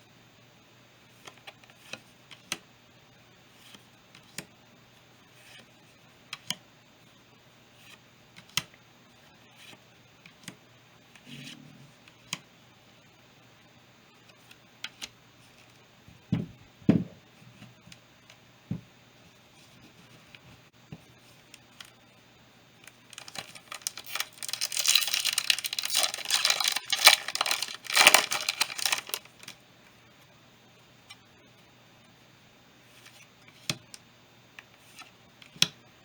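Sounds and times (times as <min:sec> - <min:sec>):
cards rustling: 0:22.8 - 0:29.6
trading cards clicking: 0:23.2 - 0:29.5.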